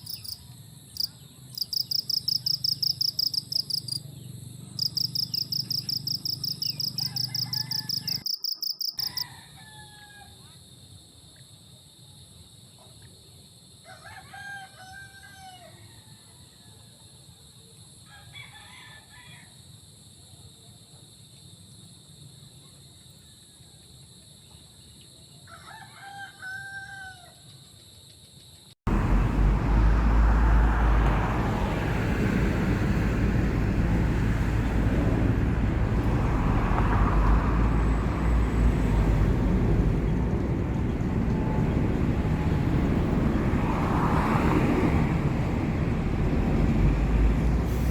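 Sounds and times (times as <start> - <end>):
rooster crowing: 4.9 - 10.5, 13.8 - 16.9, 18.1 - 19.6, 25.5 - 27.5.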